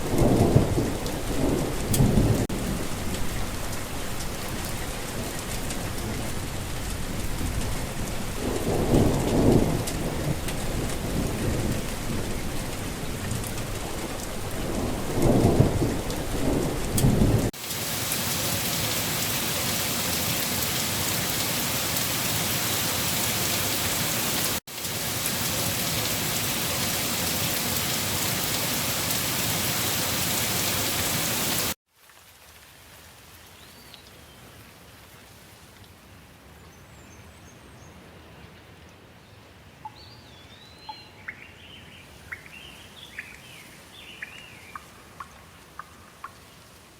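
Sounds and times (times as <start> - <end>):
thunder rolling: 0.0 - 3.6, 8.3 - 12.6, 14.4 - 17.5
heavy rain falling: 0.0 - 33.3.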